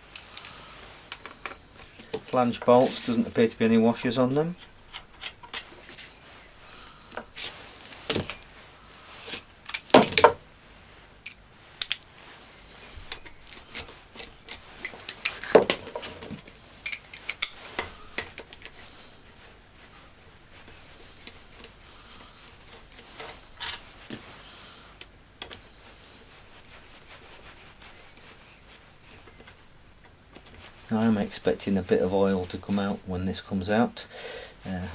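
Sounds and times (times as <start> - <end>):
metallic clinks of tools and bolts: 4.6 - 5.7, 11.2 - 12.3, 13.1 - 18.8, 22.4 - 24.4.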